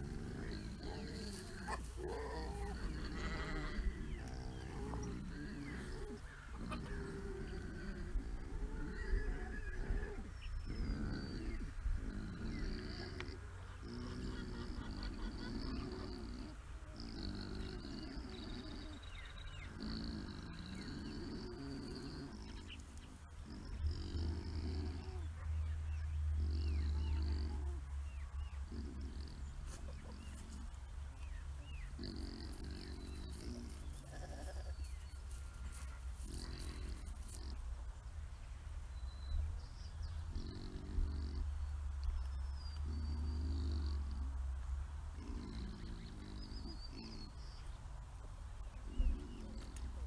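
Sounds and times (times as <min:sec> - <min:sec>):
livestock calling: 0:00.0 - 0:30.8, 0:31.6 - 0:37.7
sheep bleating: 0:33.9 - 0:36.8.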